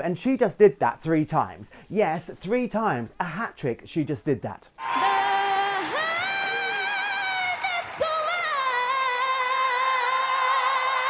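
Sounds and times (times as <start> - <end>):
woman singing high notes: 4.8 - 11.0.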